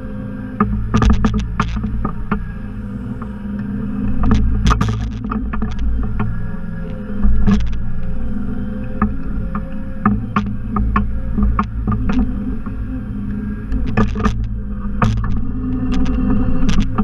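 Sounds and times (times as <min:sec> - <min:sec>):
tractor engine running: 0:00.0 - 0:17.0
sharp knocks and clanks: 0:00.6 - 0:02.5, 0:13.8 - 0:17.0.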